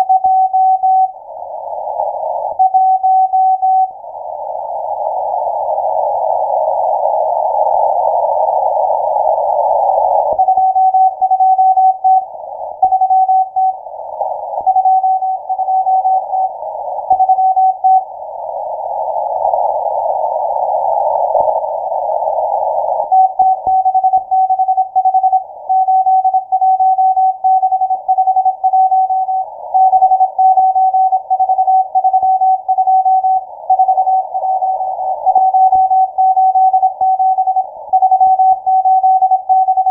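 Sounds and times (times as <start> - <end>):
morse code tone: 23.1 - 39.9.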